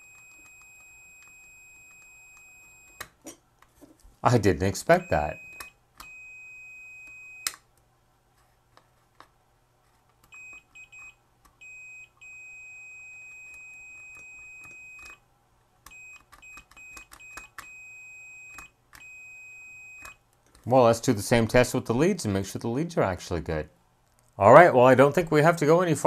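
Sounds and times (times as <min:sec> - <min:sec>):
multimeter continuity beeping: 0:00.0 - 0:03.1, 0:04.9 - 0:07.6, 0:10.3 - 0:15.2, 0:15.9 - 0:20.2.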